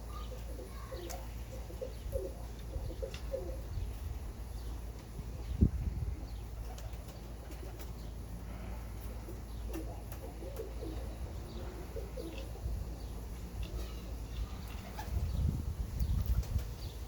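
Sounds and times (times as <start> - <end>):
pigeons cooing: 0.0 - 4.0, 5.4 - 16.9
wind rumble on microphone: 2.0 - 6.7, 14.4 - 17.0.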